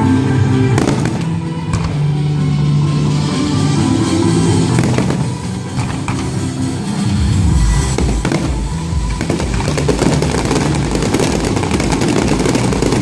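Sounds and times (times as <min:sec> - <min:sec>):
music playing: 0:00.0 - 0:13.0
fireworks crackling: 0:00.7 - 0:02.1, 0:04.6 - 0:13.0
fireworks booming: 0:00.8 - 0:02.1, 0:04.7 - 0:06.5, 0:07.9 - 0:13.0.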